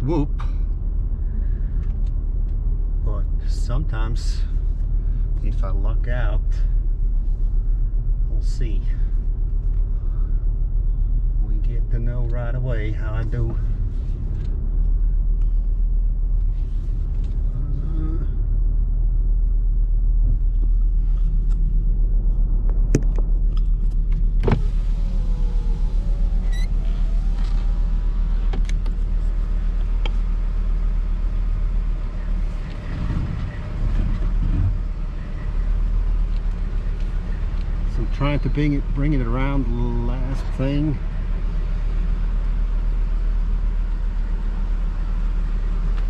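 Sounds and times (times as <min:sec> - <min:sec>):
truck engine running low: 0:13.5 - 0:46.0.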